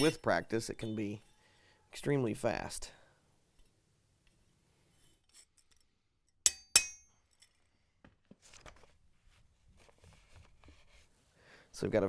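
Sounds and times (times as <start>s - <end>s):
metal-on-metal strikes: 0.0s - 1.0s, 6.5s - 7.1s
metal tools clinking: 0.0s - 1.2s, 6.5s - 7.5s.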